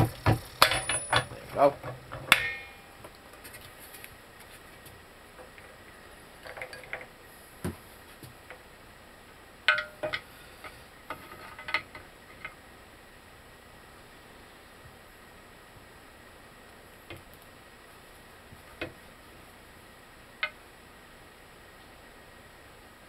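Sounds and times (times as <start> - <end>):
metal tools clinking: 0.6 - 2.9.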